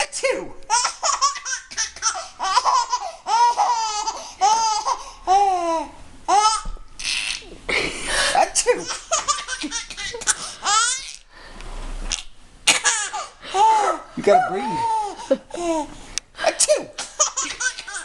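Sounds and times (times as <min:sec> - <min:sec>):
baby laughing hysterically: 0:00.7 - 0:05.7, 0:08.8 - 0:11.2, 0:17.0 - 0:18.0.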